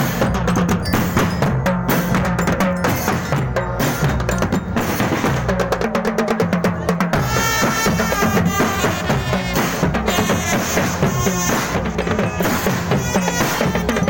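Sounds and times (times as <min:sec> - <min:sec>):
drums in fast rhythm: 0:00.0 - 0:14.0.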